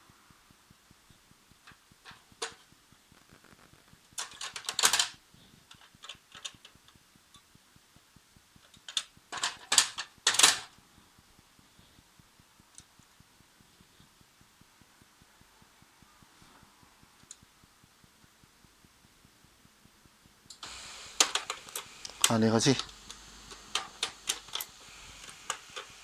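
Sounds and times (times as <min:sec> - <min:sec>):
printer mechanism clicking: 0:20.6 - 0:26.0.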